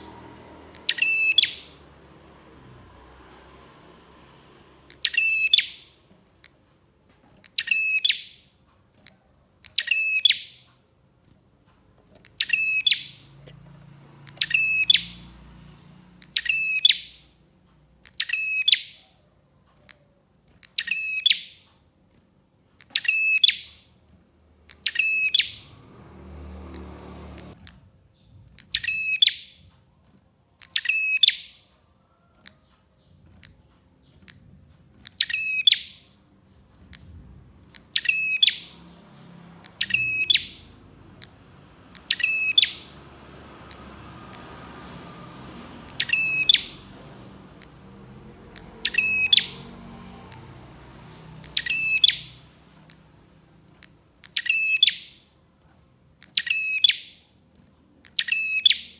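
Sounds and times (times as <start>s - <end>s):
songbird calling: 0.0s - 2.0s, 4.8s - 6.6s, 7.4s - 10.7s, 12.2s - 13.5s, 14.2s - 15.4s, 16.1s - 17.4s, 18.0s - 19.2s, 19.9s - 21.6s, 22.8s - 23.9s, 24.7s - 25.8s, 30.6s - 31.6s, 34.2s - 36.2s, 37.7s - 39.0s, 39.6s - 44.5s, 45.7s - 53.1s, 53.8s - 55.3s, 56.2s - 57.3s, 58.0s - 58.9s.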